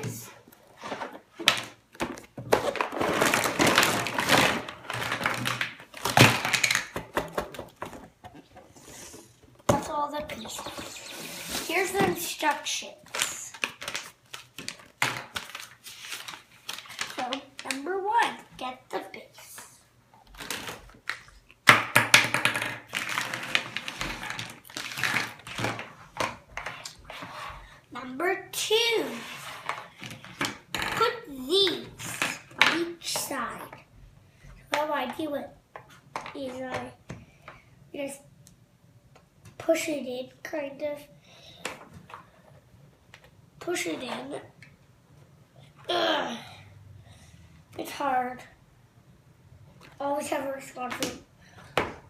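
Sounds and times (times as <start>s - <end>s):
plastic packaging crinkling: 13.1s - 17.8s.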